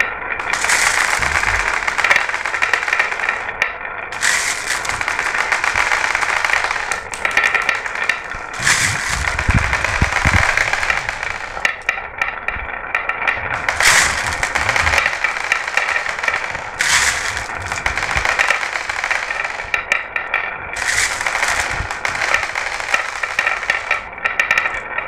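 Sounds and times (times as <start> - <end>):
marbles rattling down a marble run: 0.0 - 12.3, 13.0 - 25.0.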